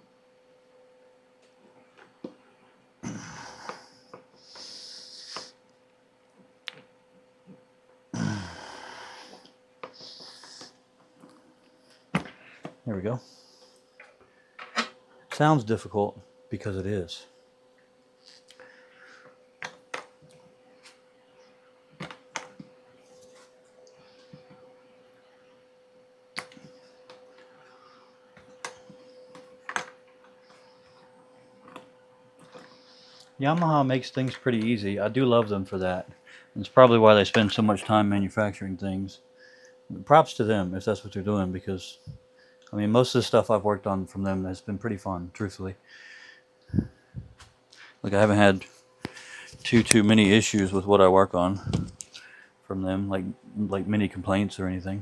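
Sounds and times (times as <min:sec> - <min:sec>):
faint steady hum: 0:00.0 - 0:55.0
man grunting with strain: 0:03.0 - 0:03.9, 0:08.2 - 0:09.2
forceful hissing breaths: 0:03.0 - 0:05.6, 0:08.2 - 0:10.8, 0:32.5 - 0:33.4.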